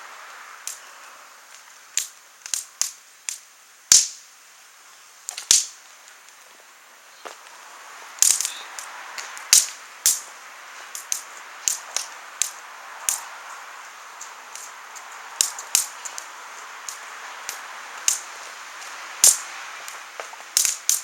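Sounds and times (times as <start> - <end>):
wood fire crackling: 0.0 - 21.0
fire pops and snaps: 0.6 - 4.3, 5.3 - 6.4, 8.2 - 13.3, 14.2 - 21.0.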